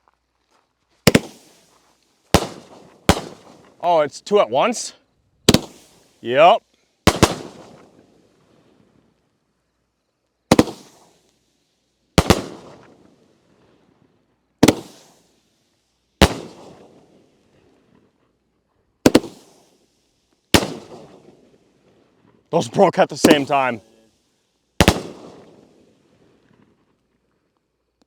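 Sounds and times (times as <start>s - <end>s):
fireworks booming: 1.1s - 1.6s, 5.4s - 8.1s, 10.5s - 11.0s, 14.6s - 15.1s, 22.6s - 23.8s, 24.8s - 26.2s.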